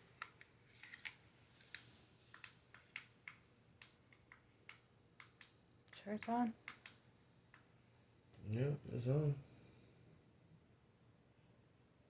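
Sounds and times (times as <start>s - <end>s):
light clicks of plastic parts: 0.0s - 7.8s.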